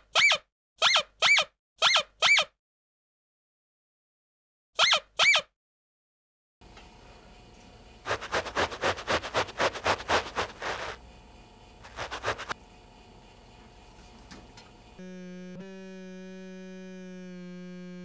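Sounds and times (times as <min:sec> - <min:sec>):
carpet being scratched: 0:08.0 - 0:11.0, 0:11.8 - 0:12.6.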